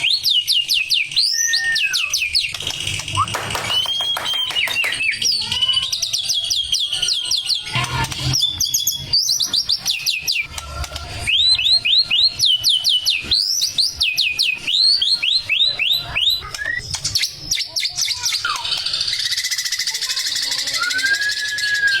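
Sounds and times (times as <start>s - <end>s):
bird singing whistled notes: 0.0s - 5.4s, 11.2s - 18.6s, 20.4s - 22.0s
rising-and-falling whistle: 20.8s - 22.0s.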